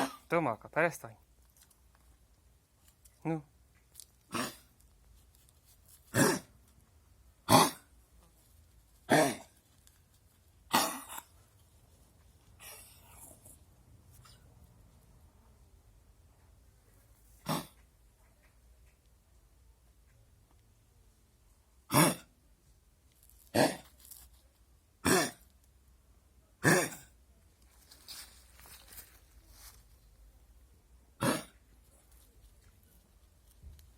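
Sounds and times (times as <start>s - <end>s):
dog coughing: 4.3s - 4.7s, 6.1s - 6.5s, 7.5s - 7.9s, 9.1s - 9.5s, 10.7s - 11.4s, 17.4s - 17.8s, 21.9s - 22.3s, 23.5s - 23.8s, 25.0s - 25.4s, 26.6s - 27.2s, 31.2s - 31.6s.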